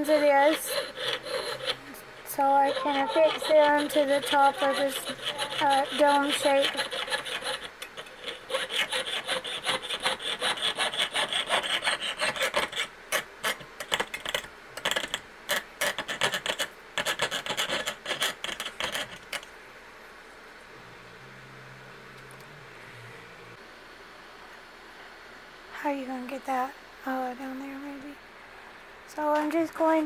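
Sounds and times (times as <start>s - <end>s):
saw cutting metal: 0.0s - 19.3s.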